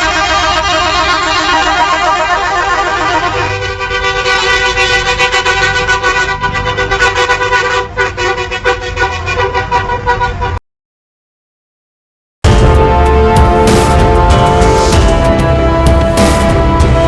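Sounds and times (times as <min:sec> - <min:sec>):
low engine noise: 0:00.0 - 0:07.0, 0:12.5 - 0:17.0
bus horns blaring in a chord: 0:00.0 - 0:10.6, 0:12.5 - 0:17.0.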